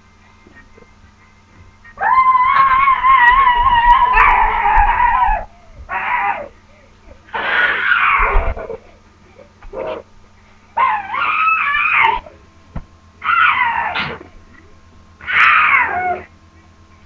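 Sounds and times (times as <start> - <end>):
high-pitched wavering cries: 1.9 - 8.9, 10.7 - 12.4, 13.2 - 14.3, 15.2 - 16.3.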